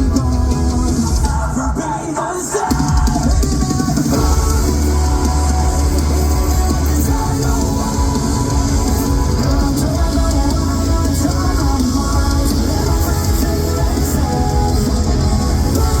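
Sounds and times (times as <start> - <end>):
metal band playing loud: 0.0 - 16.0.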